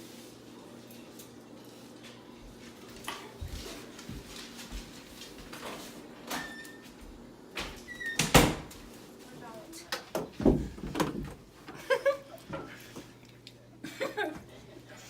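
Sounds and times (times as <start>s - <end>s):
household knocks and clatter: 10.1s - 11.4s.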